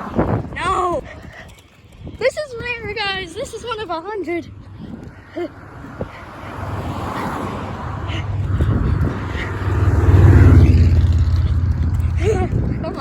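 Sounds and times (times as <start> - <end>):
car driving past: 4.5 - 12.8.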